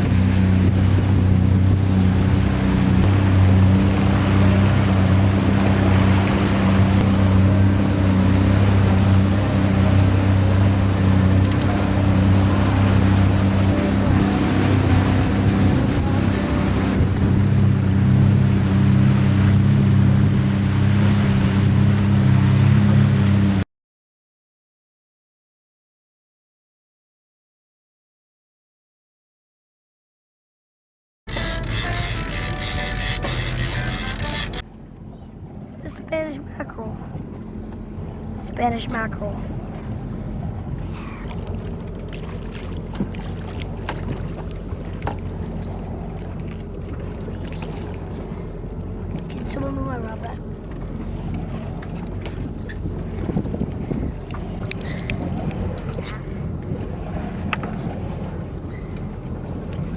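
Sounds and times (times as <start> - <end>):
wind noise: 0.0 - 3.7, 14.0 - 20.6, 52.3 - 58.0
boat engine running: 0.0 - 23.6, 31.3 - 59.9
water rushing: 0.0 - 23.6, 31.3 - 34.6.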